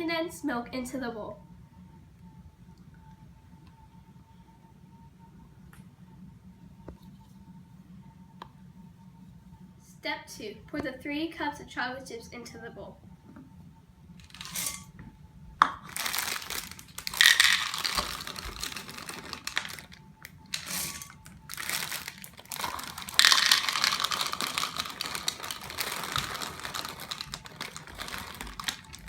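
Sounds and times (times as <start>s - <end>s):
chocolate chips pattering into bowl: 14.2s - 14.9s, 15.6s - 29.0s
plastic bag crinkling: 14.2s - 14.9s, 15.6s - 29.0s.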